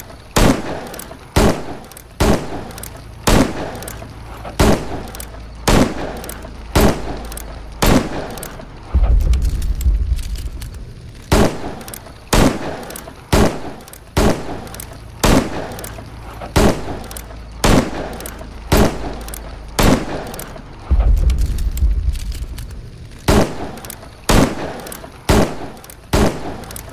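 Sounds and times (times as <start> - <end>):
low rumble: 2.9 - 11.9, 14.4 - 24.3.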